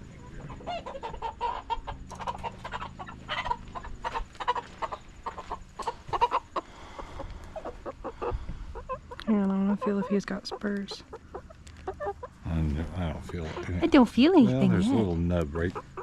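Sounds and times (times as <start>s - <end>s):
chickens clucking and squawking: 0.0s - 16.0s.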